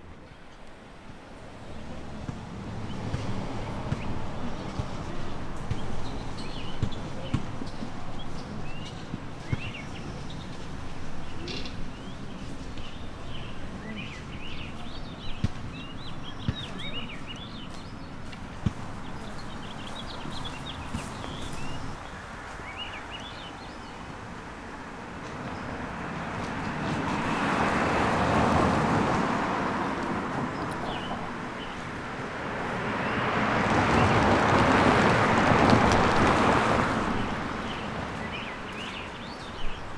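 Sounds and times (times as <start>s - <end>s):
vehicle passing: 1.3s - 22.0s, 26.5s - 38.2s
birds chirping: 1.6s - 22.0s, 30.6s - 32.0s, 32.8s - 39.9s.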